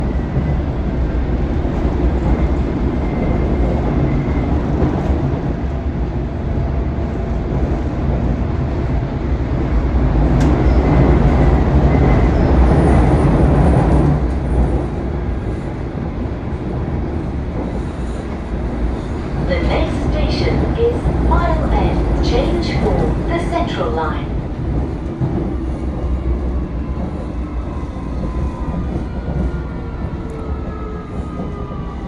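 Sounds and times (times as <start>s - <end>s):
train wheels rumbling on rail: 0.0s - 32.0s
click: 10.4s - 10.6s.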